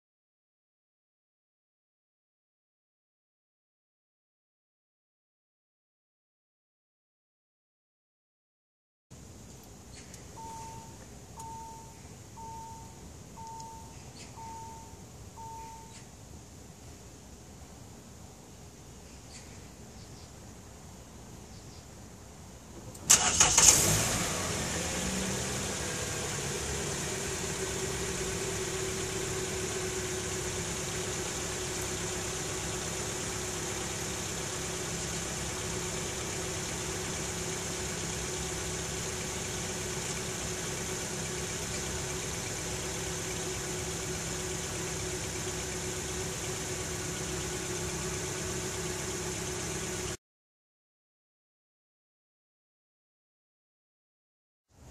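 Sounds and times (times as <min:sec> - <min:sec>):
car engine cranking and idling: 0:09.5 - 0:11.8, 0:12.4 - 0:12.8, 0:13.4 - 0:14.8, 0:22.8 - 0:50.2.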